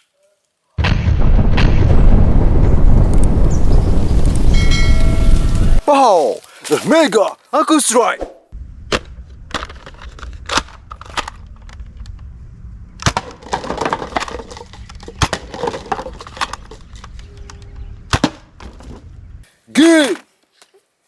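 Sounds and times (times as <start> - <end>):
steady low rumble: 0.8 - 5.8, 8.6 - 13.2.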